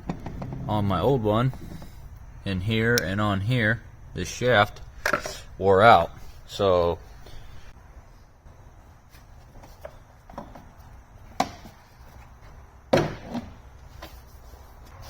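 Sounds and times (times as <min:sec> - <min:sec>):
knocks and clunks of hand tools: 0:11.4 - 0:11.8.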